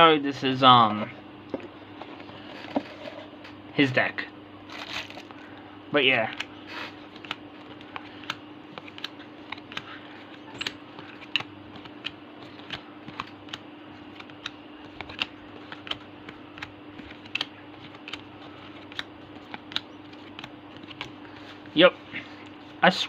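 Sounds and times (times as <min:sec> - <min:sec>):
trading cards clicking down: 0:07.1 - 0:21.2.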